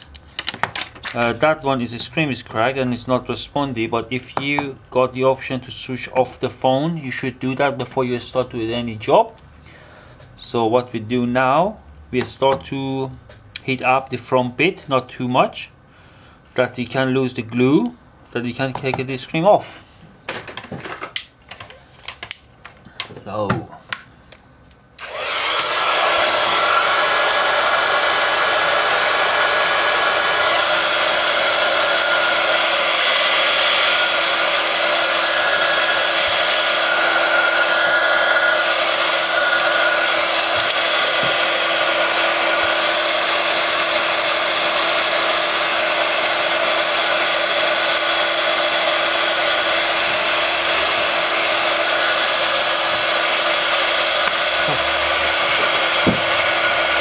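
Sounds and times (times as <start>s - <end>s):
hot-air blower running: 25.0s - 57.0s.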